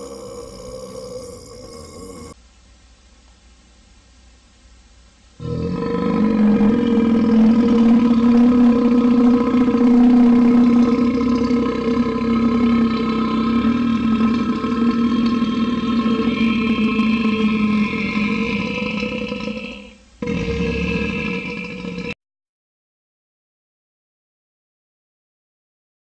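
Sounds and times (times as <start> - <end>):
long loud burp: 0.0 - 2.4, 5.4 - 22.2.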